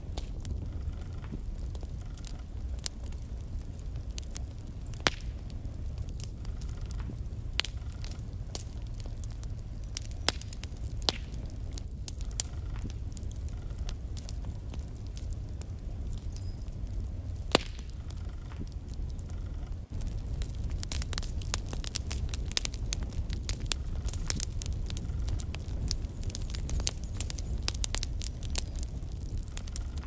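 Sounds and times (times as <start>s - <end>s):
logs crackling and popping: 0.0s - 30.0s
low rumble of fire: 0.0s - 30.0s.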